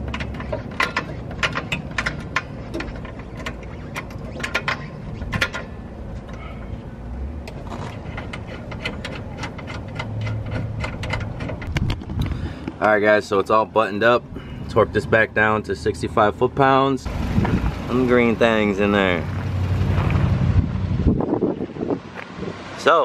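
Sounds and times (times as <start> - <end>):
hand tools clicking on metal: 0.0 - 5.7, 7.8 - 12.0
low rumble: 17.0 - 22.1.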